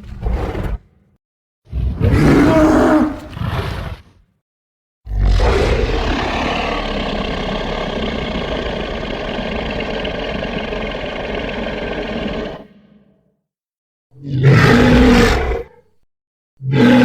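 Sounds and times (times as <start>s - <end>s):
low monster rumble: 5.1s - 13.0s.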